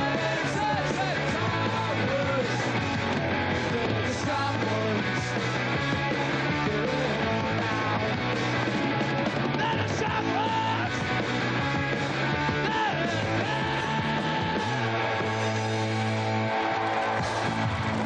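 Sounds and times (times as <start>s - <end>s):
rock band playing: 0.0s - 18.0s
person singing shouted vocals: 9.6s - 11.0s, 12.6s - 15.1s.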